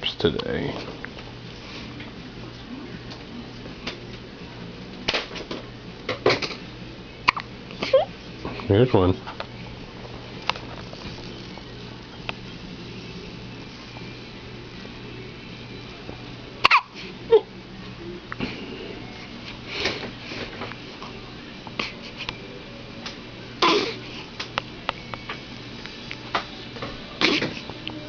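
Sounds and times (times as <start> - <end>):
room hum with hiss: 0.0 - 28.0
baby hiccupping: 7.3 - 8.0, 16.6 - 17.5, 23.6 - 24.0, 27.2 - 27.6
baby hiccups: 16.6 - 17.0, 23.6 - 24.0, 27.2 - 27.5.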